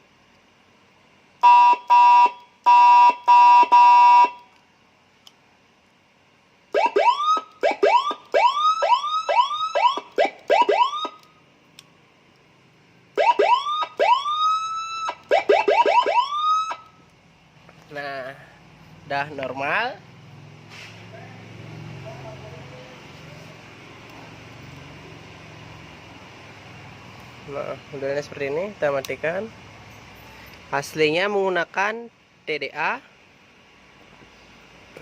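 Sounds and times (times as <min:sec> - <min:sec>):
short horn-like siren beeps: 0:01.4 - 0:04.4
quick rising siren whoops: 0:06.8 - 0:11.2, 0:13.2 - 0:16.9
long rising siren wails: 0:06.8 - 0:11.3, 0:13.2 - 0:16.9.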